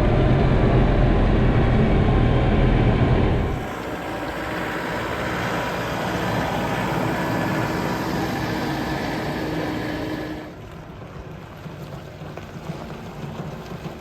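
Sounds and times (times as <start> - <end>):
tractor engine running: 0.0 - 14.0.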